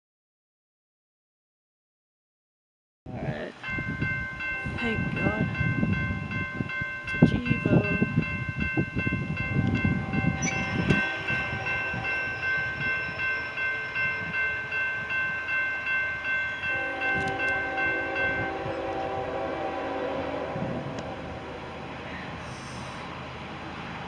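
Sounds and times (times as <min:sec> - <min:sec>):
freight train passing: 0:03.2 - 0:24.0
steady high tones: 0:03.6 - 0:23.6
wheels clacking over rail joints: 0:09.0 - 0:19.1.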